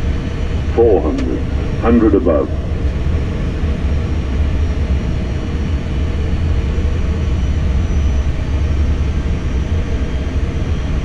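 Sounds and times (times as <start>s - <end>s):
airplane cockpit rumble: 0.0s - 11.0s.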